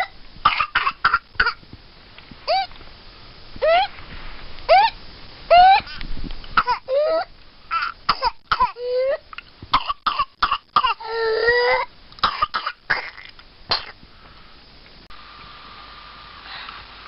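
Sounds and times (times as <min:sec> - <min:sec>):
short harsh coughs: 0:12.2 - 0:14.0.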